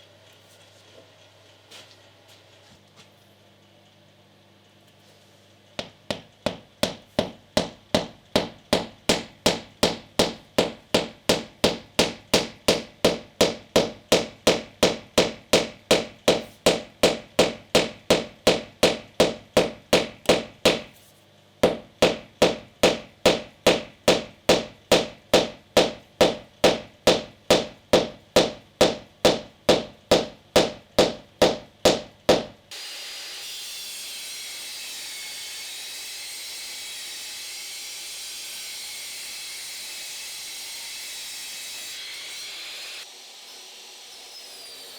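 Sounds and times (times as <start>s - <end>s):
hammer blows on wood: 5.8s - 21.0s, 21.6s - 32.6s.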